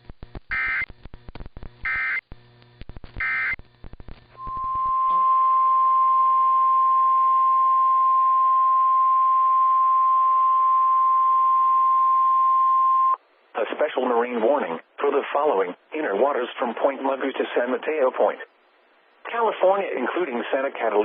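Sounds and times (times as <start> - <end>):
alert data bursts: 1.9 - 2.2, 3.2 - 3.6
radio hiss: 13.5 - 18.6.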